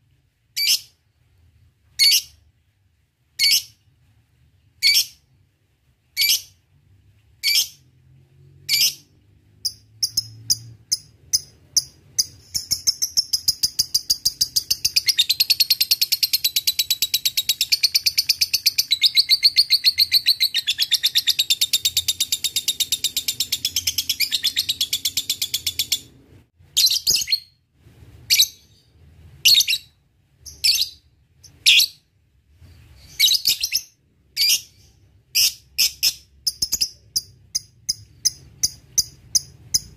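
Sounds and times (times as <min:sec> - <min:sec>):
bird chirping: 0:00.6 - 0:02.5, 0:03.4 - 0:03.9, 0:04.7 - 0:05.3, 0:06.1 - 0:06.6, 0:07.4 - 0:27.6, 0:28.3 - 0:32.1, 0:32.7 - 0:39.9.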